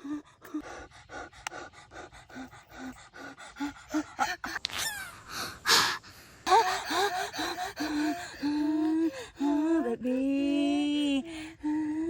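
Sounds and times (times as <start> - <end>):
person gasping rhythmically: 0.0 - 9.6.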